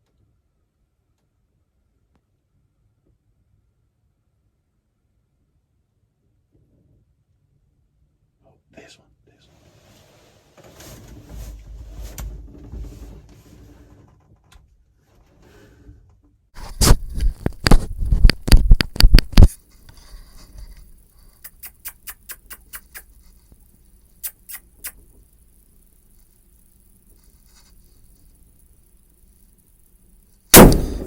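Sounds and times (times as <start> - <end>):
sharp knocks and scrapes: 16.6 - 23.4.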